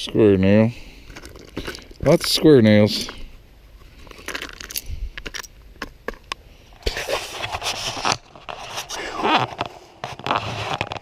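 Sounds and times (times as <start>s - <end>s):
hand tool scraping stony dirt: 6.8s - 11.0s.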